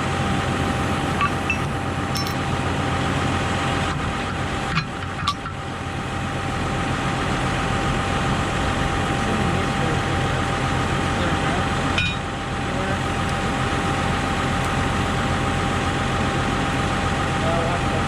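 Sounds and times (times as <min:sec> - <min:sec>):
tractor engine idling: 0:00.0 - 0:18.0
sharp metallic clinks: 0:01.2 - 0:02.5.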